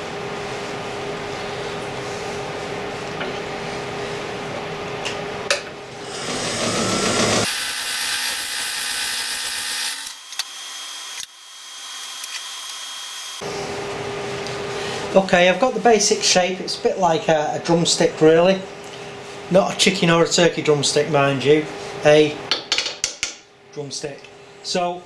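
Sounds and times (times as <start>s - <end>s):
wood lathe humming: 6.0s - 13.4s.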